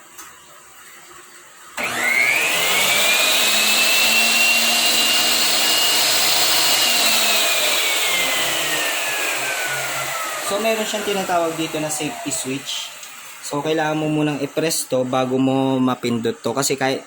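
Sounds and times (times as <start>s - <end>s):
miter saw motor whine: 1.8s - 15.2s.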